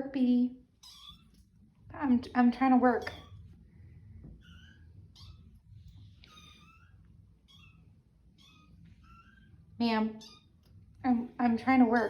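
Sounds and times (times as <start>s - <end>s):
kitten meowing: 0.8s - 1.4s, 4.4s - 5.5s, 6.3s - 9.5s.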